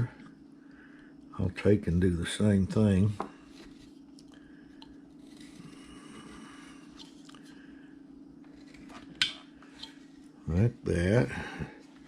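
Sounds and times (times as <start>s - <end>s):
steady low hum: 0.0s - 12.0s
knife carving wood: 5.1s - 7.2s, 8.4s - 9.9s.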